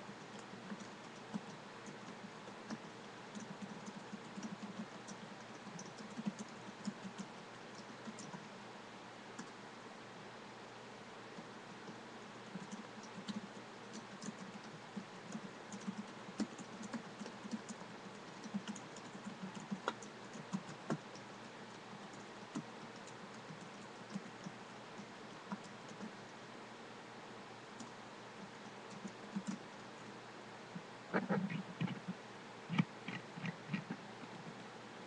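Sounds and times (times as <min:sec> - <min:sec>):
typing on computer keyboard: 0:00.0 - 0:08.5, 0:12.4 - 0:26.2, 0:28.9 - 0:29.6
steady background hiss: 0:00.0 - 0:35.0.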